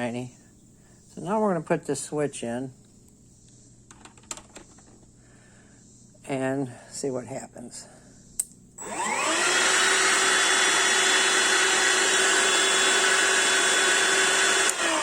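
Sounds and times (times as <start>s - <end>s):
vacuum motor whining: 8.8s - 15.0s.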